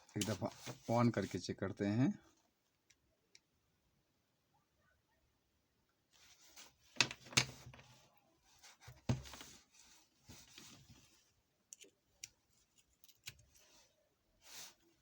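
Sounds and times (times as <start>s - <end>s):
rubbing and rustling: 6.1s - 11.4s.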